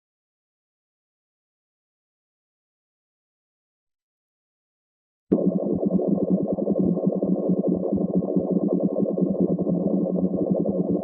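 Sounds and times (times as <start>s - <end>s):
rapid gurgling bubbles: 5.3s - 11.0s.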